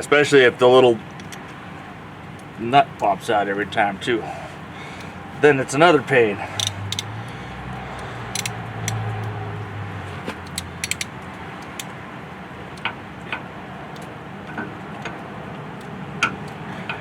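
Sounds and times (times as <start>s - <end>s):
wrench clinking against metal: 6.4s - 9.4s, 10.4s - 11.9s.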